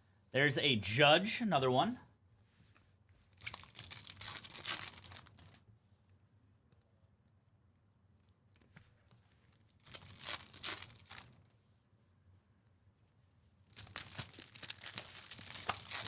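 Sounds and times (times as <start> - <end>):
foil wrapper tearing and crinkling: 3.4 - 5.6, 9.6 - 11.4, 13.7 - 16.0.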